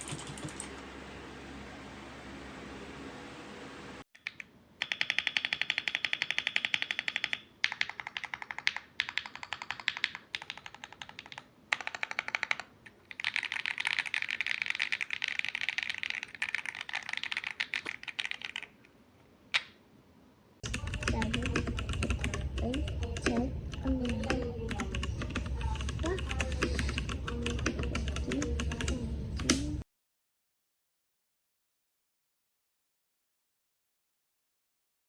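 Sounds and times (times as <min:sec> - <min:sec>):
mechanical keyboard typing: 0:00.0 - 0:00.7, 0:04.2 - 0:18.8, 0:20.6 - 0:29.7.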